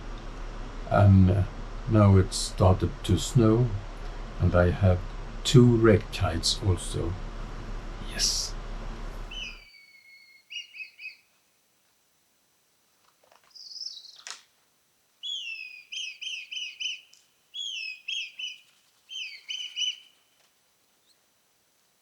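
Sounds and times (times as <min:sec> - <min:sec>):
bird whistling calls: 0:09.3 - 0:11.3, 0:13.5 - 0:14.3, 0:15.2 - 0:20.4.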